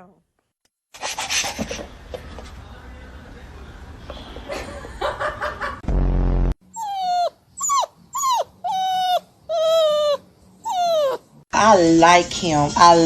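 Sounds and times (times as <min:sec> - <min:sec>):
low rumble: 0:05.8 - 0:06.6
dog whining: 0:06.7 - 0:11.4.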